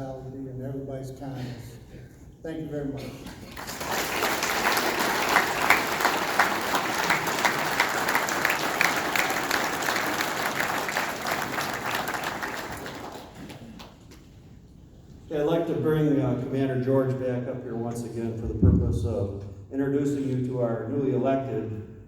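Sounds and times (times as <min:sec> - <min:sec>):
audience applauding: 0:03.3 - 0:14.1.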